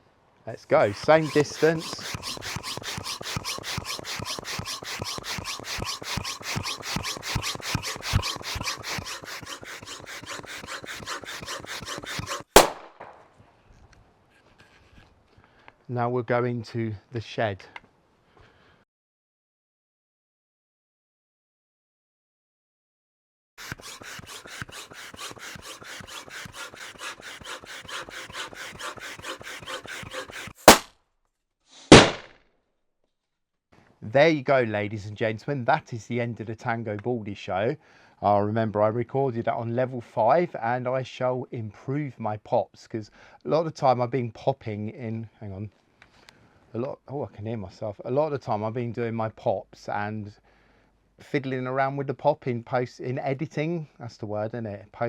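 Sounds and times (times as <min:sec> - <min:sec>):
balloon hand pump strokes: 0:00.8 - 0:12.8, 0:23.6 - 0:30.9
balloon bursting pop: 0:30.6 - 0:30.9, 0:31.9 - 0:32.3.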